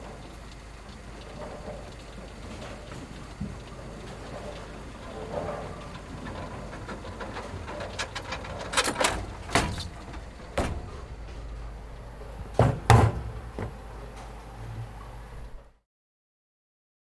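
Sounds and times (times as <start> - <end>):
steady low hum: 0.0 - 15.8
knocks and thumps: 6.2 - 11.6, 12.4 - 13.9.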